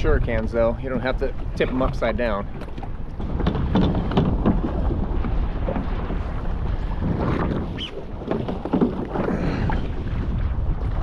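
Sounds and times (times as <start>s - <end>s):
wind buffeting microphone: 0.0s - 11.0s
short knocks and rustles: 1.8s - 6.2s.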